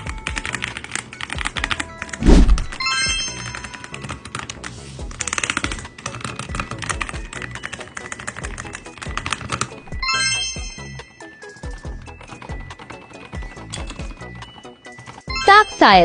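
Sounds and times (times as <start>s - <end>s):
mechanical keyboard typing: 0.0s - 2.2s, 3.5s - 4.6s, 5.2s - 9.8s, 11.8s - 15.2s
background music with chimes: 2.7s - 4.2s, 6.8s - 16.0s.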